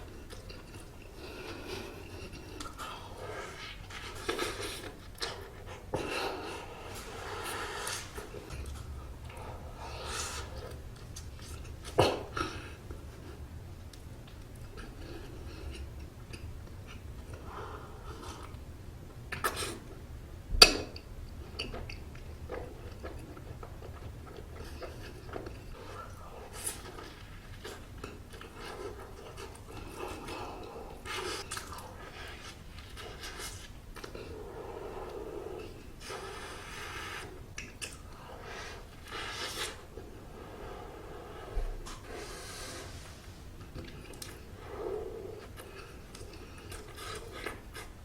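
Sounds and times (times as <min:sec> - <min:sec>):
chewing soft food: 0:00.0 - 0:20.0, 0:21.0 - 0:48.0
wet mouth clicks: 0:36.4 - 0:38.1
breathy puffs of air: 0:38.4 - 0:43.5.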